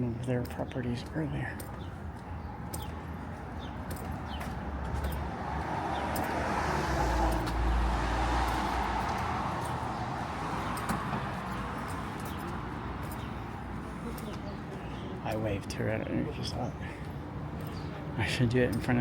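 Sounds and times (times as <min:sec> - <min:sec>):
car driving past: 0:05.0 - 0:11.6.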